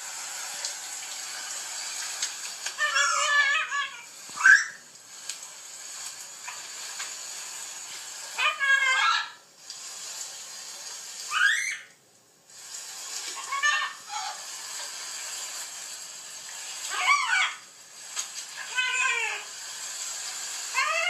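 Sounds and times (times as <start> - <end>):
faint steady hiss: 0.0 - 21.0
pitched animal calls: 2.8 - 4.8, 13.4 - 14.4.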